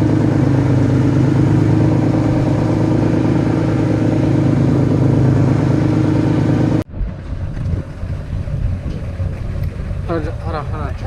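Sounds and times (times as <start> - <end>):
boat engine idling: 0.0 - 11.0.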